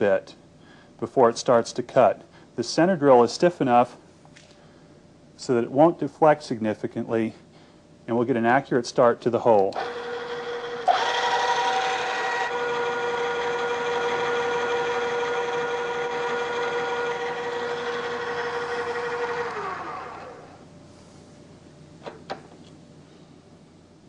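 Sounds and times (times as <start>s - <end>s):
spindle motor whining: 9.7s - 20.7s
drill cutting: 9.8s - 20.6s.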